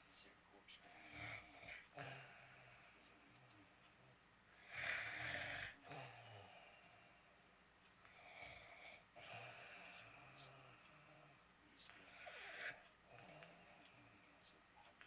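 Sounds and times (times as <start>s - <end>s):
dog snoring: 0.9s - 2.9s, 4.6s - 7.1s, 8.1s - 11.4s, 12.0s - 14.0s.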